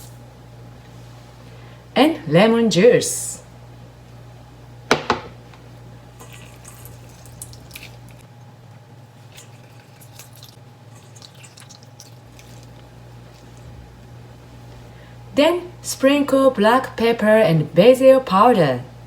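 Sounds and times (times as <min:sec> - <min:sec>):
juice dripping and splashing: 0:06.2 - 0:08.2, 0:09.2 - 0:14.1.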